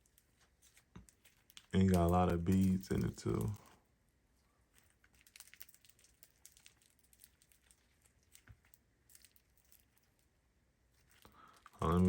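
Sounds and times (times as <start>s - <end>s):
slime crackling and popping: 0.0s - 3.6s, 4.7s - 10.3s.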